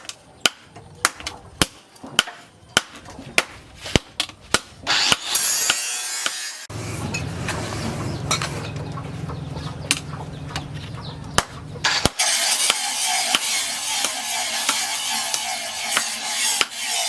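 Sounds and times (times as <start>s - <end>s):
low motor hum: 6.7s - 11.9s.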